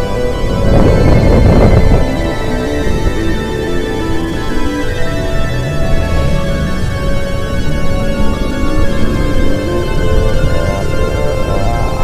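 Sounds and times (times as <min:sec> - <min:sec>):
suspenseful background music: 0:00.0 - 0:12.0.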